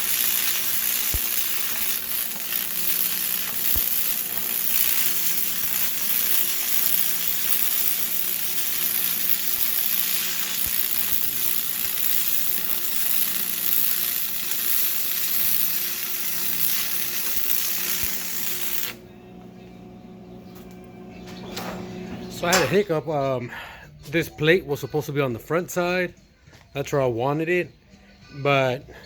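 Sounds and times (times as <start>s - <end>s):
arc welding crackling sizzle: 0.0s - 19.7s.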